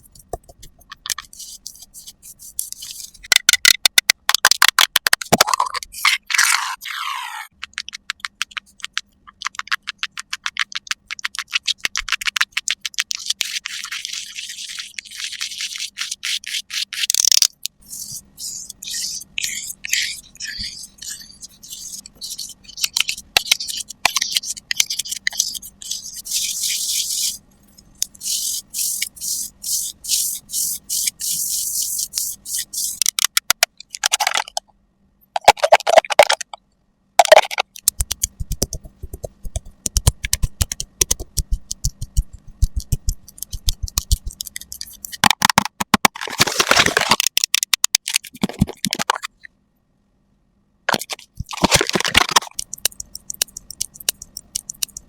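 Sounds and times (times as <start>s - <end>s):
makeup brushes scratching: 0.0s - 3.2s, 5.5s - 33.2s, 37.2s - 45.3s, 51.0s - 55.0s
rapid clicks: 37.2s - 46.1s, 51.0s - 55.0s.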